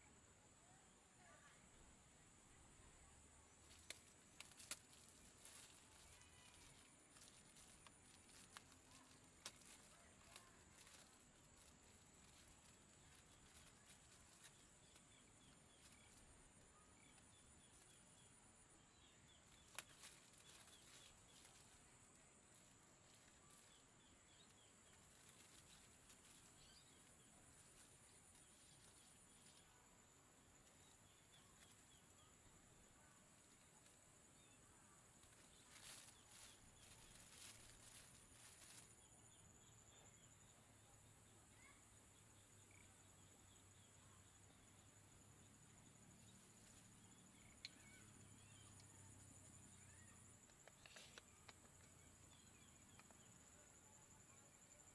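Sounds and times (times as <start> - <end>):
faint chirps: 0.0 - 54.9.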